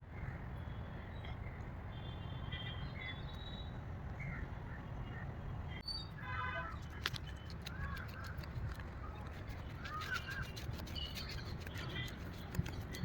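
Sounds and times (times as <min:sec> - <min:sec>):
high bird chirps: 0:05.8 - 0:06.2, 0:09.5 - 0:13.0.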